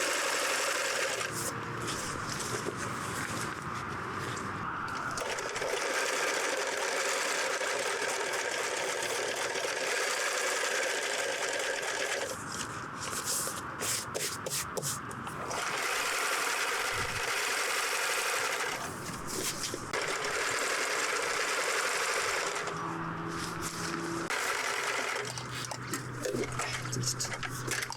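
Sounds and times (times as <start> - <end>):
sewing machine stitching: 0.0 - 1.4, 5.2 - 12.4, 15.4 - 22.8, 24.3 - 26.8.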